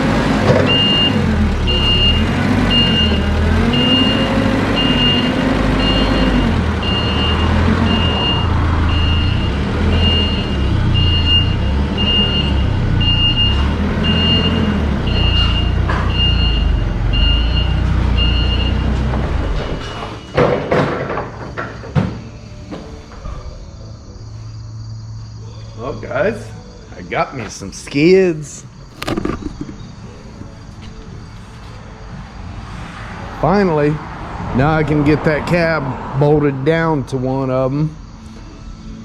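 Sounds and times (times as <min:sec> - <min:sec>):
vehicle engine running: 0:00.0 - 0:19.5
reversing alarm beeping: 0:00.5 - 0:19.0, 0:19.6 - 0:20.5.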